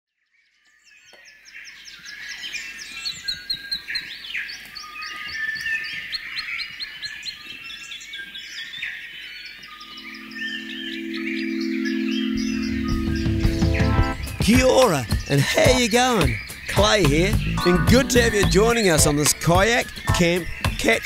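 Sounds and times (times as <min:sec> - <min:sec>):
songbirds chirping: 0:00.4 - 0:21.0.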